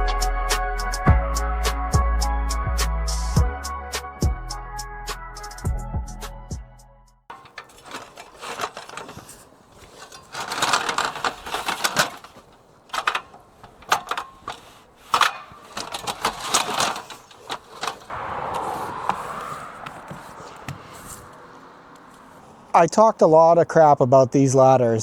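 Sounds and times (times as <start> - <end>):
taps knocks and scraping: 7.3 - 18.2, 19.8 - 22.5.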